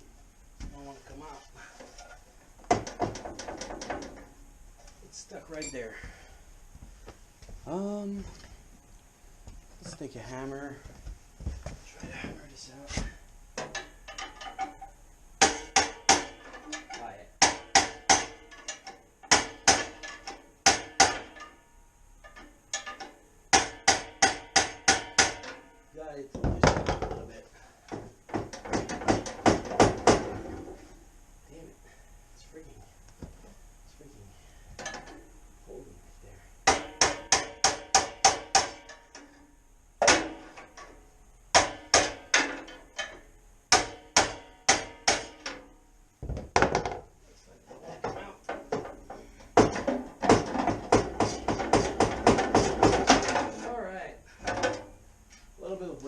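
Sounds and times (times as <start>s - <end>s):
hammer striking metal: 15.4s - 16.8s, 17.4s - 21.6s, 22.3s - 25.8s, 36.6s - 39.1s, 41.5s - 45.7s.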